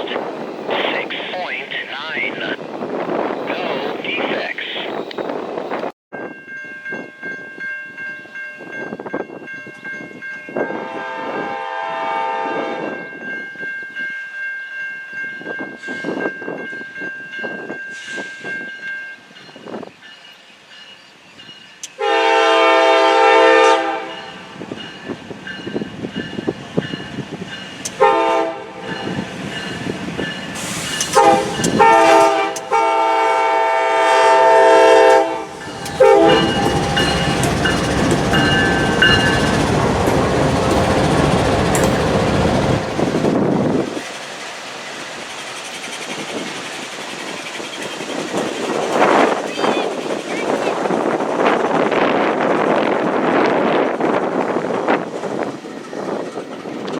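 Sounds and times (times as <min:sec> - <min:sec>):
locomotive air horn: 0:10.7 - 0:13.0, 0:22.0 - 0:24.3, 0:28.0 - 0:29.1, 0:30.6 - 0:43.0
locomotives rumbling: 0:34.9 - 0:51.6.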